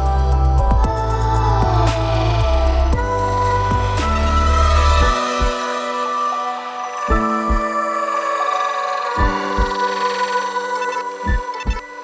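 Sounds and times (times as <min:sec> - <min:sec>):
heavy bass line: 0:00.0 - 0:05.5.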